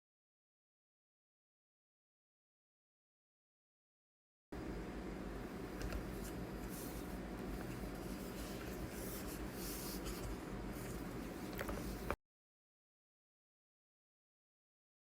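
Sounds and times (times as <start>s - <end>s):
steady low hum: 4.6s - 12.2s
scratching and rubbing on surface: 5.9s - 12.2s.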